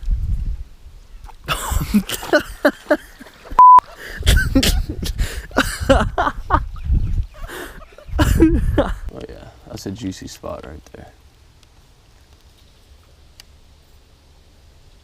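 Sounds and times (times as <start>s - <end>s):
censor bleep tone: 3.6s - 3.8s.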